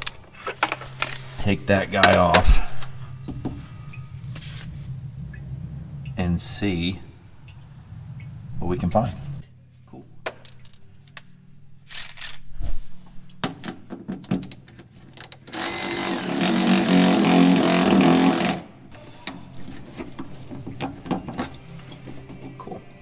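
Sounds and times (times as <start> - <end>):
power tool running: 15.5 - 23.0.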